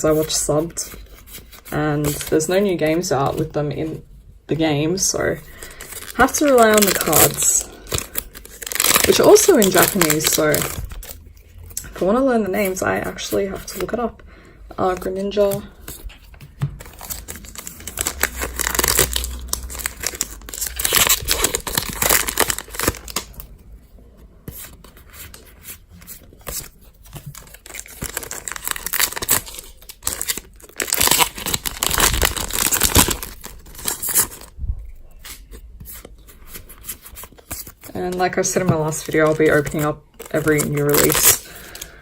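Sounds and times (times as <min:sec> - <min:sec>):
foil wrappers tearing and crinkling: 0:05.5 - 0:11.8, 0:16.8 - 0:23.4, 0:26.4 - 0:34.5, 0:38.9 - 0:42.0.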